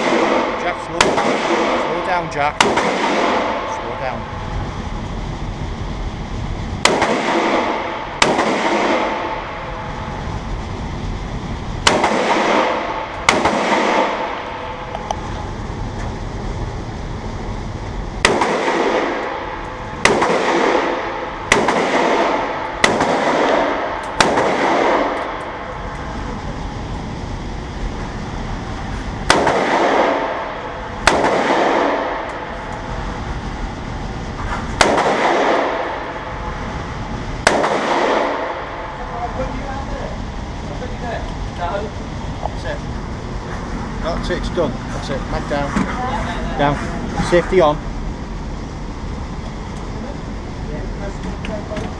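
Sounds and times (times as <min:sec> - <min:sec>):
rifle shots with echo: 0:00.0 - 0:03.7, 0:06.8 - 0:09.7, 0:11.8 - 0:14.8, 0:18.2 - 0:26.1, 0:29.2 - 0:33.0, 0:34.8 - 0:36.7, 0:37.4 - 0:39.0.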